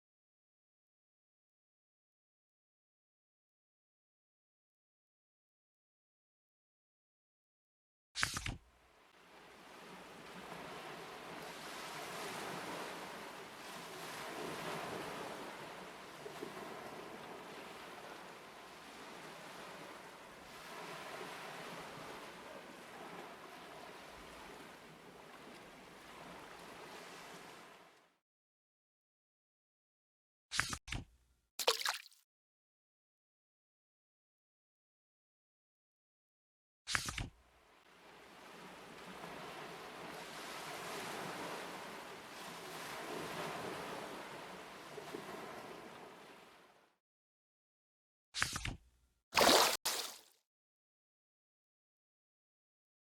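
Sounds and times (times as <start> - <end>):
ocean waves washing: 9.0 - 28.0, 37.9 - 46.8, 49.4 - 50.2.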